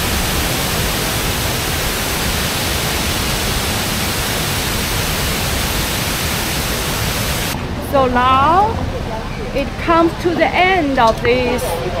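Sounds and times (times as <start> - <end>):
waterfall rushing: 0.0 - 7.6.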